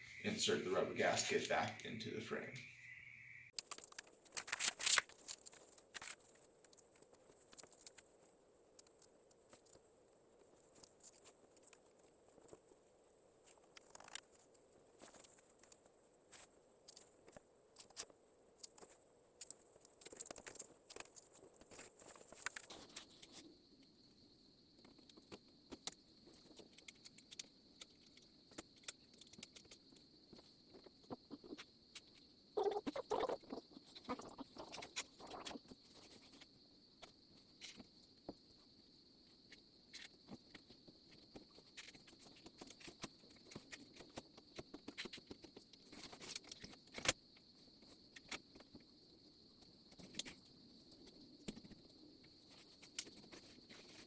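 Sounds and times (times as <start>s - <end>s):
faint steady high tone: 0.0s - 3.6s.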